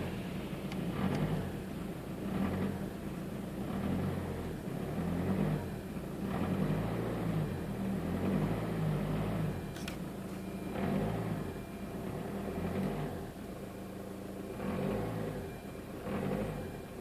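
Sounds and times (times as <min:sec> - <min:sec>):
popping cracking engine noise: 0:00.0 - 0:13.6
diesel engine running: 0:00.0 - 0:17.0.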